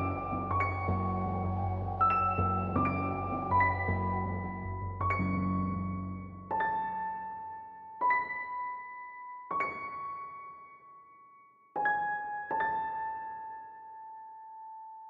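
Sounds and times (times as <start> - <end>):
slow piano notes: 0.0 - 11.0.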